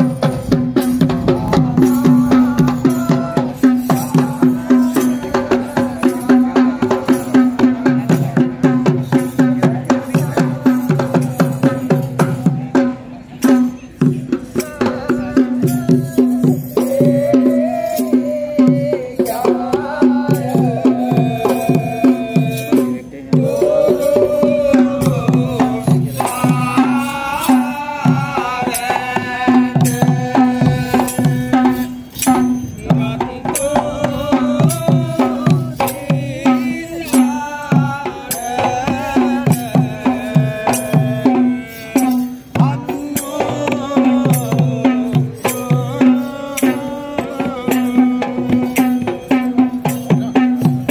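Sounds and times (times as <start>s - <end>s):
drum strokes: 0.0s - 50.9s.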